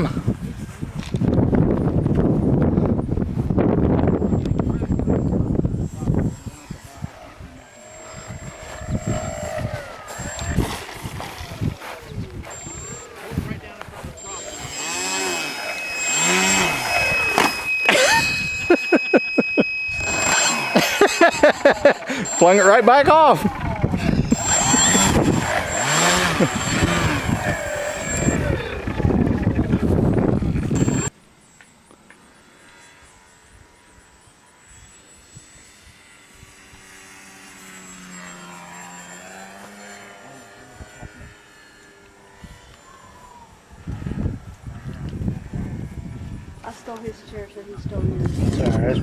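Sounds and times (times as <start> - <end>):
rc car motor whirring: 3.8 - 49.0
bursts of laughter: 17.8 - 22.5.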